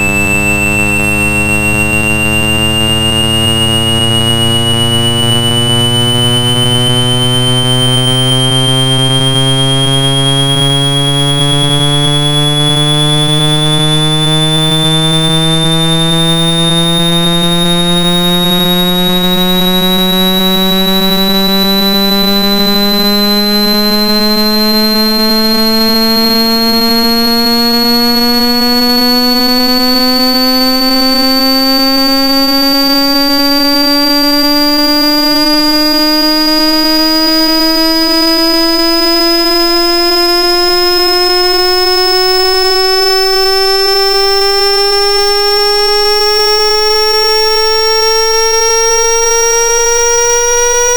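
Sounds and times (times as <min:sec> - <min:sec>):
buzzy rising test tone: 0:00.0 - 0:50.9.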